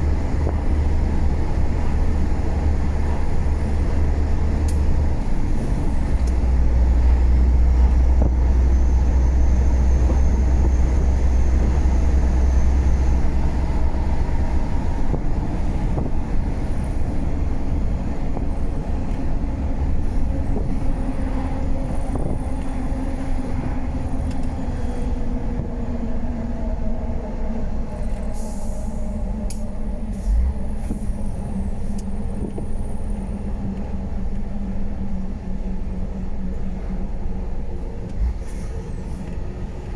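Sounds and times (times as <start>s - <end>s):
diesel truck engine rumbling: 0.0s - 39.9s
short air hisses: 28.4s - 29.1s.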